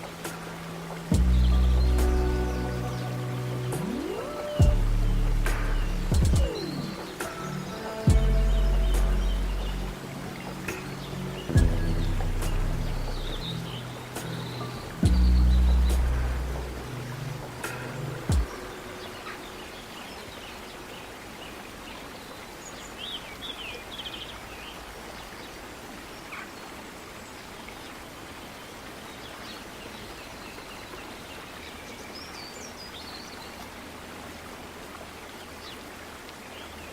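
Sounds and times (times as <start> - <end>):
steady rushing hiss: 0.0 - 23.8
bird chirps: 1.1 - 20.8.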